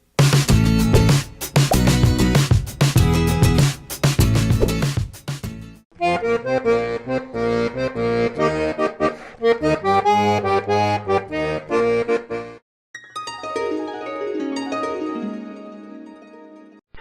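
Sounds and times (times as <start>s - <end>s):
lively instrumental tune: 0.2s - 16.4s
plucked notes: 13.0s - 16.6s.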